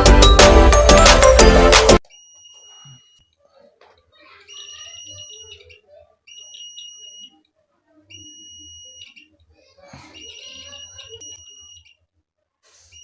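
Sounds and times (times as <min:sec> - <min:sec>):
background music: 0:00.0 - 0:02.0
high-pitched alarm buzzer beeps: 0:02.1 - 0:03.3, 0:04.5 - 0:07.4, 0:08.1 - 0:09.3, 0:10.2 - 0:12.0.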